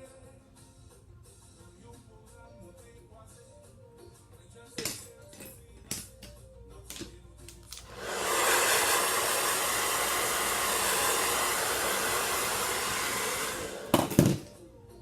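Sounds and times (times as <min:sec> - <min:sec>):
hair dryer running: 0:07.8 - 0:14.6.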